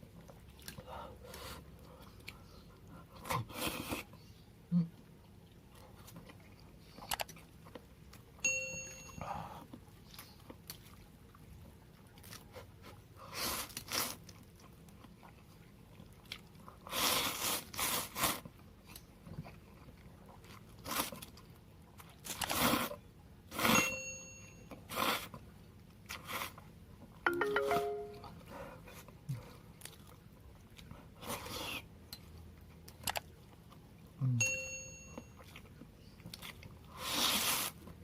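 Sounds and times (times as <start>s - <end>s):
ringing clinks: 8.4s - 9.2s, 34.4s - 35.3s
person slurping and chewing: 36.3s - 37.9s.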